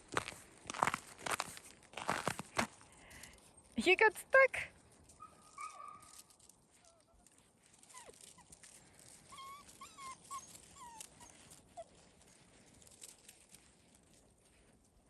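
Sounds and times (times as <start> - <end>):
faint clicks and rustles: 4.7 - 15.0
puppy whimpering: 7.8 - 8.6, 9.2 - 12.1.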